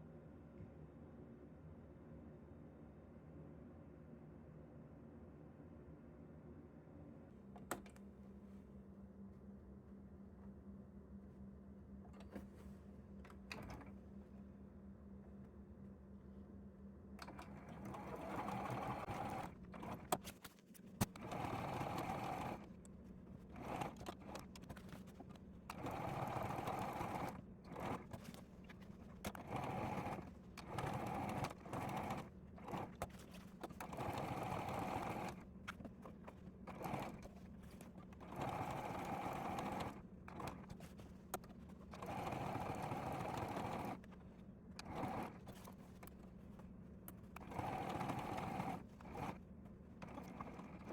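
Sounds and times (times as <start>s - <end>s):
sewing machine stitching: 17.2s - 50.9s.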